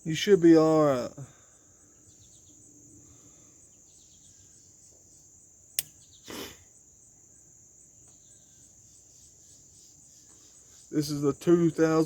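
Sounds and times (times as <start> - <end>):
sharp click: 5.8 - 6.0.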